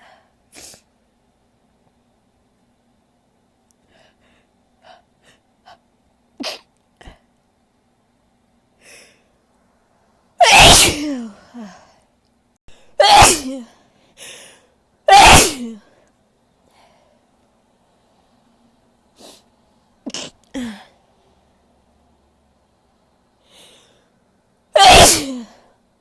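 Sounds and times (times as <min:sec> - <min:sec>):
woman sneezing loudly: 0:10.4 - 0:11.6, 0:13.0 - 0:13.7, 0:15.1 - 0:15.8, 0:20.1 - 0:20.9, 0:24.8 - 0:25.7
faint short breaths: 0:23.4 - 0:24.2.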